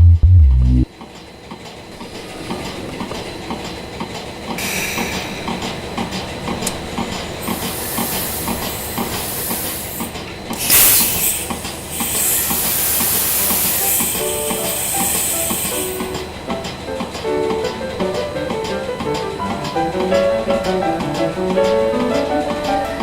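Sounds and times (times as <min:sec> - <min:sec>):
loud hiss burst: 0:04.6 - 0:05.7, 0:07.4 - 0:16.2.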